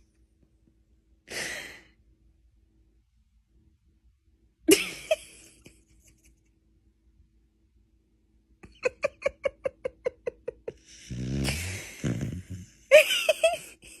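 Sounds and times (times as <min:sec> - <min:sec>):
dog snoring: 0:10.8 - 0:12.9.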